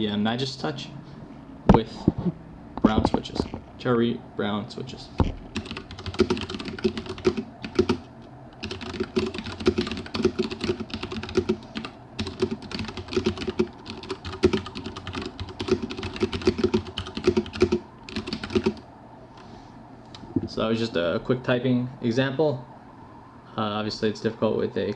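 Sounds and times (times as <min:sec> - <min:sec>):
mechanical keyboard typing: 0:05.6 - 0:08.0, 0:08.6 - 0:18.8.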